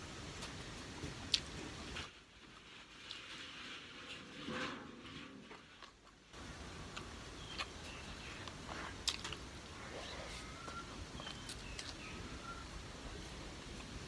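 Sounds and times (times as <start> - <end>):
person chewing: 6.8 - 10.5, 11.2 - 12.0.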